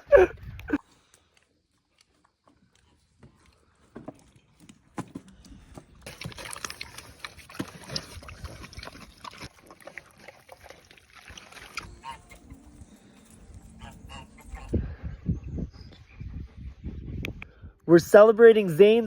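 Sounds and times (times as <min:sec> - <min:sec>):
pig eating: 0:01.6 - 0:14.8.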